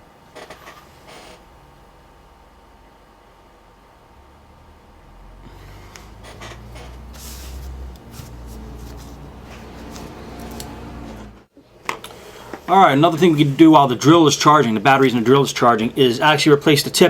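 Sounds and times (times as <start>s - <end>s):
faint hum: 0.0s - 17.0s
rustling handling noise: 6.1s - 11.4s.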